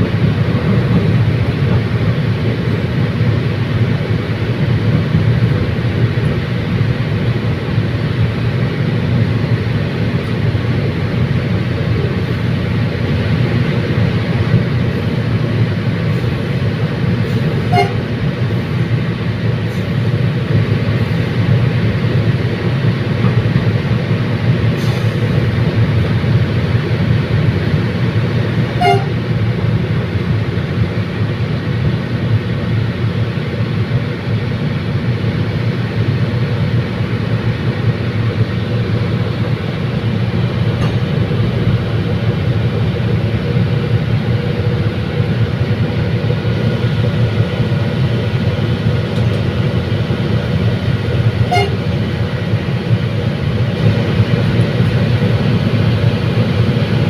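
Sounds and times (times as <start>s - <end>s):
diesel train rumbling: 0.0s - 57.0s
short high tones: 17.7s - 18.1s, 28.8s - 29.2s, 51.5s - 51.9s.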